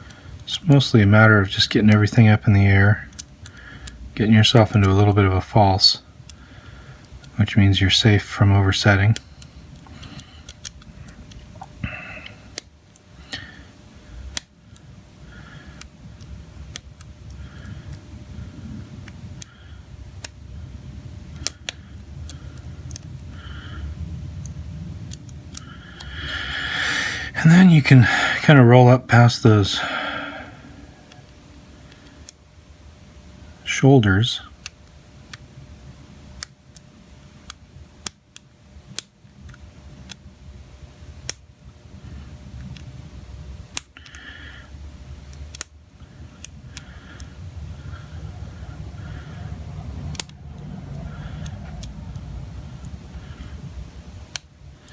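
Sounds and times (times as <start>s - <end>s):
low handling rumble: 46.5s - 54.9s.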